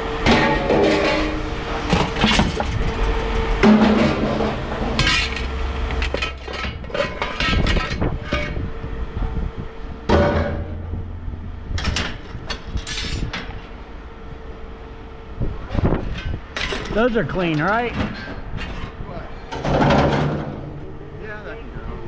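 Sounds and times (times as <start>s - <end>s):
scrap metal clanking: 0.2s - 8.6s, 10.1s - 11.0s, 17.6s - 20.8s.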